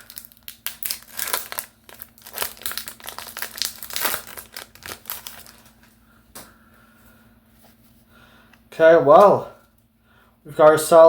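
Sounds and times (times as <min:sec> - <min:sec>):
plastic wrapper crinkling and tearing: 0:00.0 - 0:06.0.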